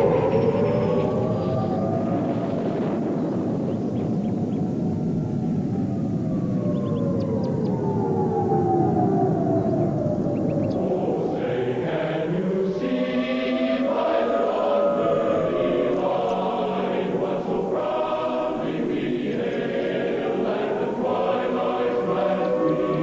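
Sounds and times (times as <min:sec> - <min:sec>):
choir singing an anthem: 0:00.0 - 0:03.0, 0:10.4 - 0:23.0.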